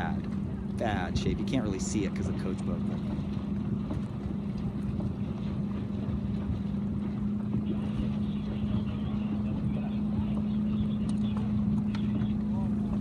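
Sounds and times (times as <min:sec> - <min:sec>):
motorboat engine idling: 0:00.0 - 0:13.0
wind buffeting microphone: 0:00.0 - 0:13.0.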